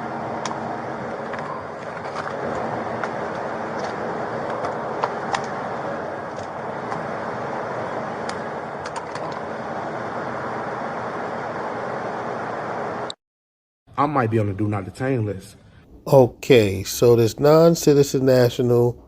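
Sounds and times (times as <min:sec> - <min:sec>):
vehicle cabin rumble and hiss: 0:00.0 - 0:13.2.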